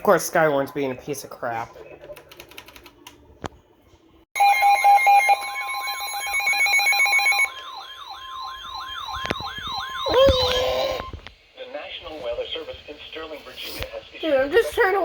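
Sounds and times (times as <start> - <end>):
steady high alert tone: 4.4 - 11.2
rapid pulsing beep: 4.5 - 11.1
siren-like falling whoop: 6.2 - 11.2.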